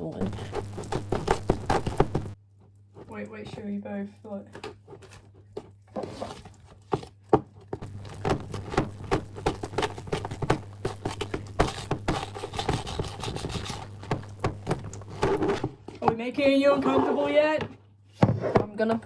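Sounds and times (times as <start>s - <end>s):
icing stirred in a bowl squelching: 0.0s - 7.2s, 7.8s - 15.8s.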